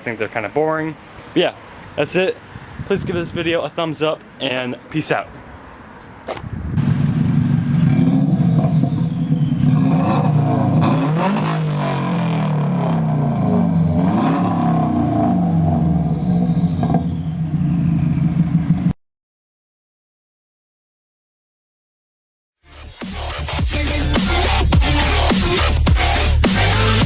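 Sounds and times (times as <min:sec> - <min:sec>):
car engine revving: 0:06.8 - 0:18.9, 0:22.7 - 0:27.0.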